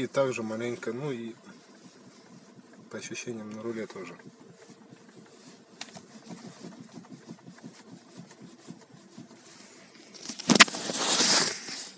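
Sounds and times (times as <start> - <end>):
car engine running: 0.0 - 10.7
steering rack knocking: 1.7 - 9.4.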